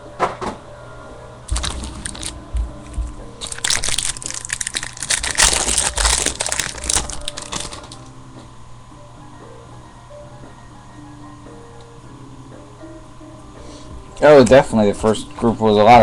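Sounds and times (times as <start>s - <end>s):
plastic wrapper tearing and crinkling: 1.5s - 8.1s.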